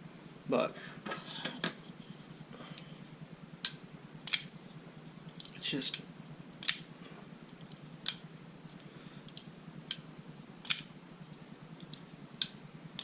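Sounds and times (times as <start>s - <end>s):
folding knife blade clicks: 3.6s - 4.5s, 10.6s - 10.9s.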